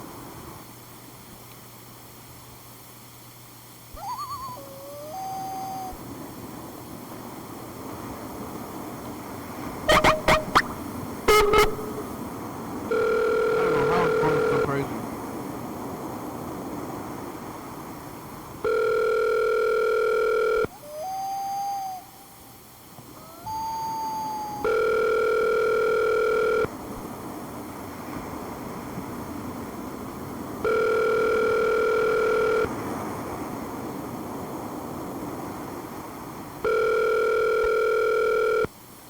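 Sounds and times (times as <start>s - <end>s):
telephone ringback tone: 9.9s - 12.1s, 12.9s - 14.9s, 18.6s - 20.7s, 24.6s - 26.7s, 30.6s - 32.8s, 36.6s - 38.7s
short wavering higher tones: 9.9s - 12.2s
phone line hiss: 9.9s - 12.3s, 12.9s - 15.1s, 18.6s - 22.2s, 23.3s - 26.8s, 30.6s - 33.0s, 36.6s - 38.8s.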